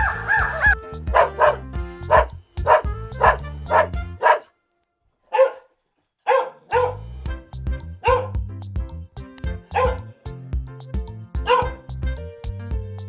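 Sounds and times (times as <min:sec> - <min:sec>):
background music with bass line: 0:00.0 - 0:04.4, 0:06.8 - 0:13.0
dog barking: 0:00.0 - 0:04.6, 0:05.3 - 0:07.0, 0:08.0 - 0:08.4, 0:09.7 - 0:10.1, 0:11.4 - 0:11.8.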